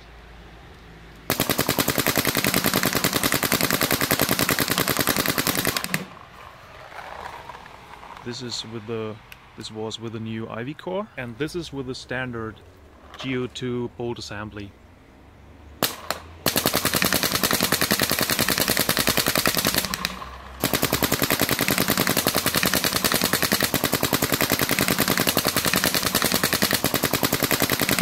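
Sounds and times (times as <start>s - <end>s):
paintball marker firing: 1.3s - 6.2s, 15.8s - 28.0s.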